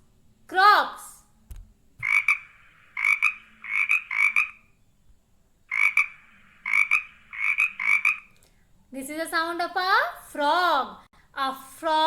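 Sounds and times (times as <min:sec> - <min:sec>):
frog croaking: 0:02.0 - 0:04.8, 0:05.7 - 0:08.4.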